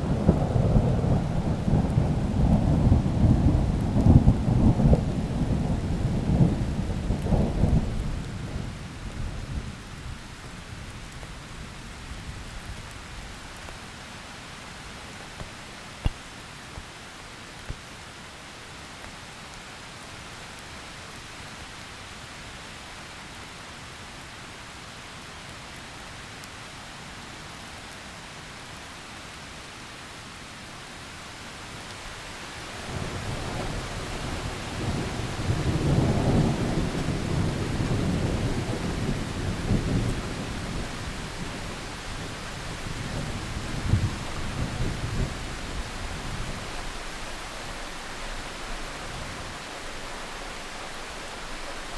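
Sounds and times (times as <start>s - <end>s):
rain hiss: 0.0s - 51.9s.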